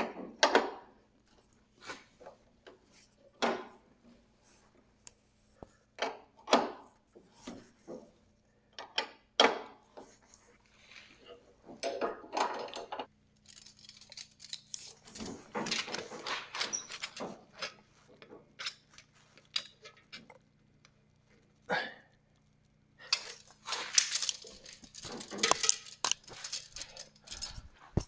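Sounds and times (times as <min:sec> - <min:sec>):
hand tools clicking on metal: 0:23.1 - 0:27.7.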